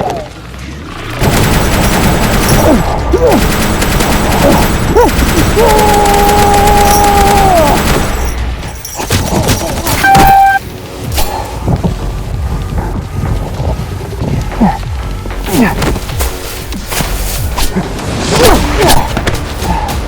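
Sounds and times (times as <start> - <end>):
rapid automatic gunfire: 1.0 - 8.6
person shouting: 5.0 - 7.9
loud electronic beep: 10.0 - 10.6.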